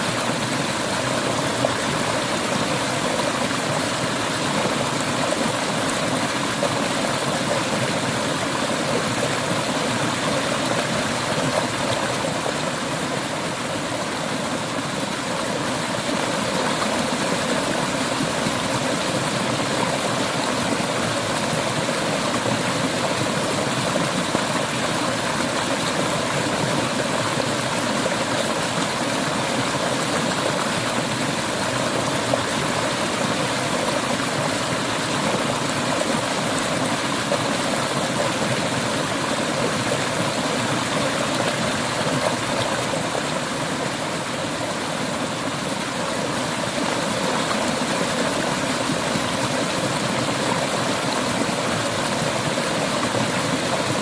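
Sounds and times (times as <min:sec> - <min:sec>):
river water rushing over stones: 0:00.0 - 0:54.0.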